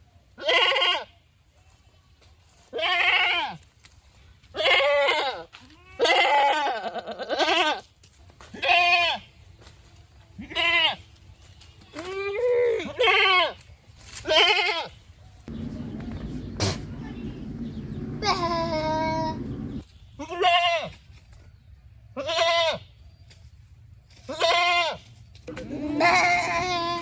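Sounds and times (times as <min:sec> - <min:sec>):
goats bleating: 0:15.5 - 0:19.8, 0:24.4 - 0:27.0.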